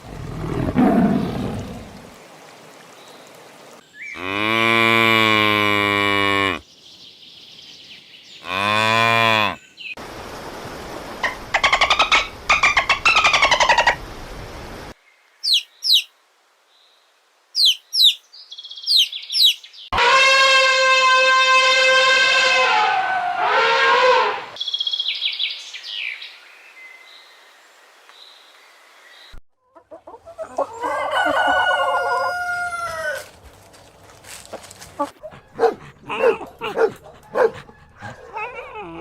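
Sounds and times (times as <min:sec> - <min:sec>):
birds chirping: 0:00.0 - 0:02.1, 0:15.4 - 0:16.1, 0:17.6 - 0:19.9, 0:34.9 - 0:39.0
cow mooing: 0:04.2 - 0:06.6, 0:08.4 - 0:09.6.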